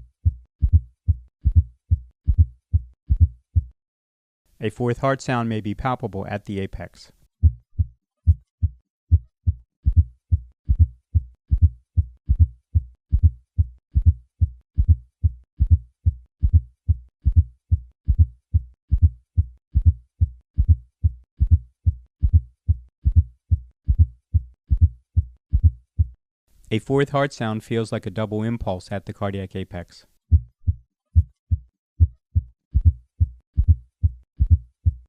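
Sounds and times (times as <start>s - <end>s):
heartbeat thumps: 0.0s - 3.8s, 7.4s - 26.2s, 30.3s - 35.0s.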